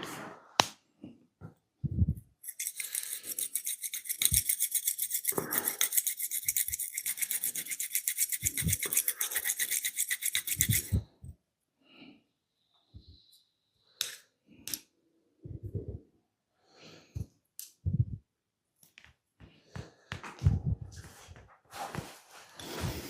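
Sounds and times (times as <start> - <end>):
hands scratching during massage: 2.5 - 11.0
soft low thumps: 20.4 - 21.0.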